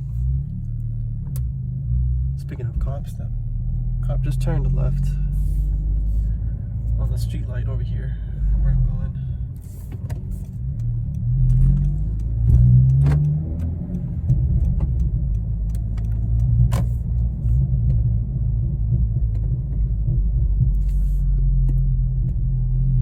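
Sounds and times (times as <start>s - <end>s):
car engine hum from cabin: 0.0s - 23.0s
sharp clicks: 10.0s - 18.0s.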